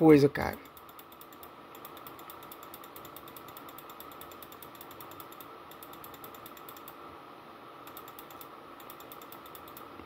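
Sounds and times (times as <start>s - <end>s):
faint steady hiss: 0.0s - 10.0s
rapid computer clicking: 0.5s - 7.0s, 7.8s - 10.0s.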